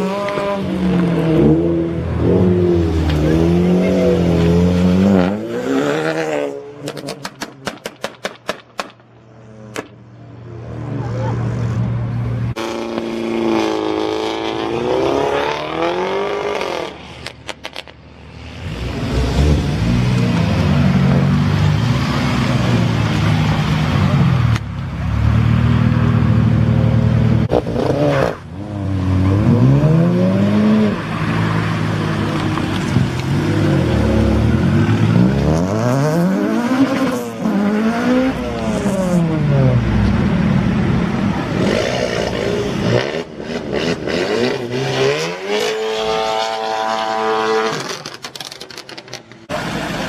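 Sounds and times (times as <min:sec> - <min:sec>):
car engine revving: 0:18.5 - 0:50.0.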